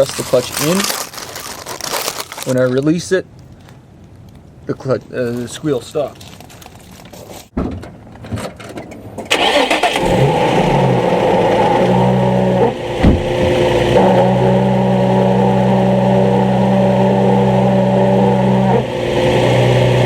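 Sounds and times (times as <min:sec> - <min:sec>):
car engine cranking and idling: 0:08.8 - 0:20.0.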